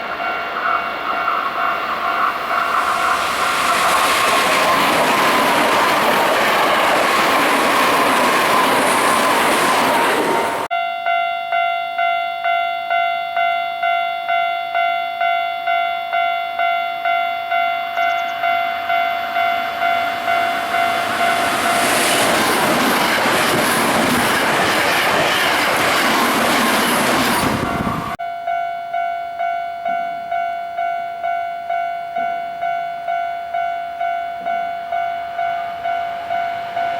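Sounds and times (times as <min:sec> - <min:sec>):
train passing on rails: 0:00.0 - 0:10.7, 0:16.2 - 0:28.2, 0:32.1 - 0:36.9.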